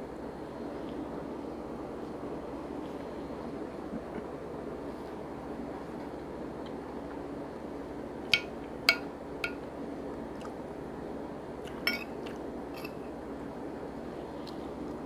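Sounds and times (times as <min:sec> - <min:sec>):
low background hum: 0:00.0 - 0:15.0
utensil clinking against a dish: 0:08.3 - 0:09.7, 0:11.7 - 0:13.1.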